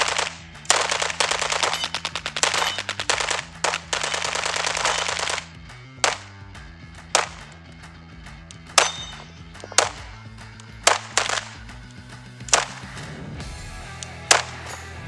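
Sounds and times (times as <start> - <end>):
single gunshots: 0.0 - 6.3, 7.1 - 7.5, 8.7 - 10.2, 10.8 - 11.7, 12.5 - 13.1
submachine guns firing bursts: 0.0 - 6.3, 7.2 - 7.5, 8.6 - 11.8, 12.5 - 13.1, 14.0 - 14.7.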